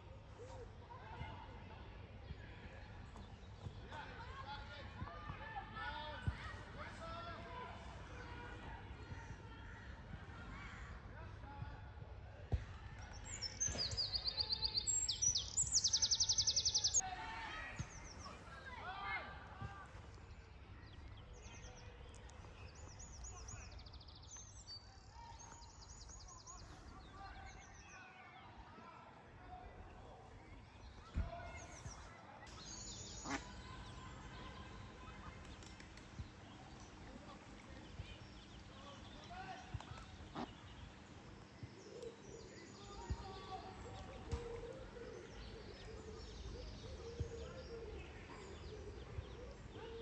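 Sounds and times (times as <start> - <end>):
faint small birds chirping: 13.0 - 50.0
songbird singing: 13.2 - 17.1, 29.7 - 50.0.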